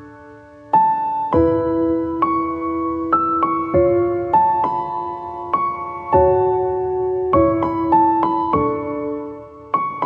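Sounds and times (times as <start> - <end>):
soft piano music: 0.0 - 10.0.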